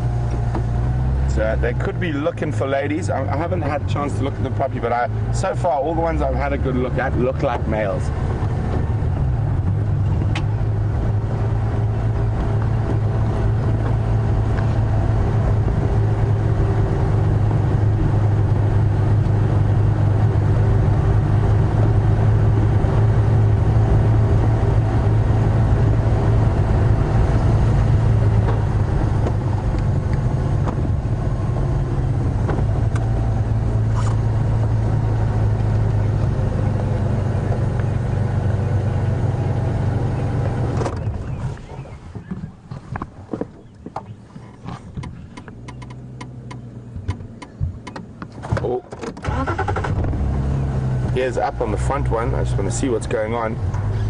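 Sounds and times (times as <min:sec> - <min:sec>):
vehicle engine droning: 0:00.0 - 0:54.0.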